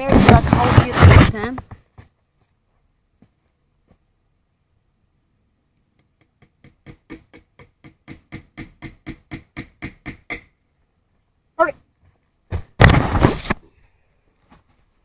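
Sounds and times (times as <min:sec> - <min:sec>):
hammer tapping nail into wood: 0:06.0 - 0:10.6.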